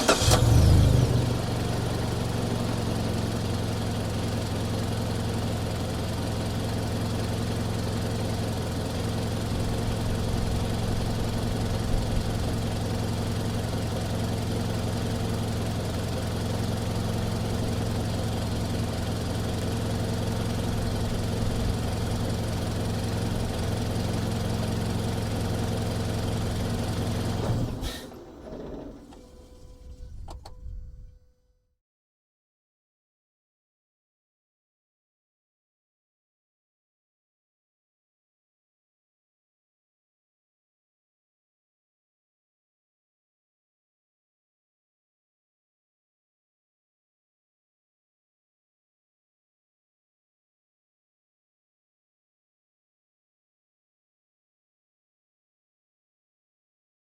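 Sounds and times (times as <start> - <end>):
car engine idling: 0.0 - 30.2.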